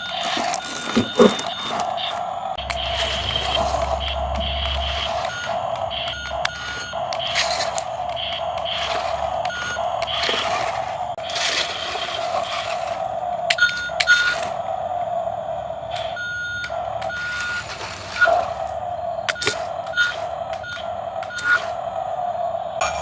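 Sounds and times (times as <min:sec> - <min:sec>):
sharp clicks: 0:00.0 - 0:22.0
steady electronic tone: 0:00.0 - 0:23.0
short high beeps: 0:02.6 - 0:07.6.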